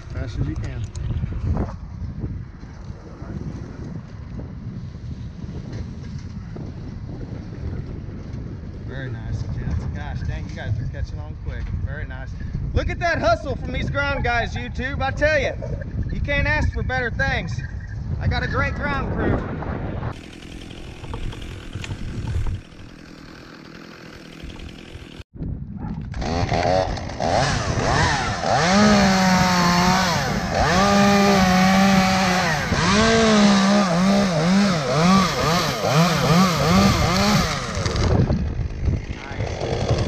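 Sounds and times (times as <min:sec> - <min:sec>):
chainsaw cutting wood: 0:20.1 - 0:25.2, 0:26.0 - 0:40.0.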